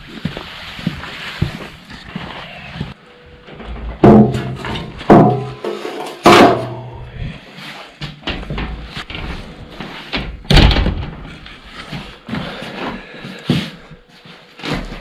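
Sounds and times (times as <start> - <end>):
knocks and thumps: 3.5 - 6.9, 10.1 - 11.4.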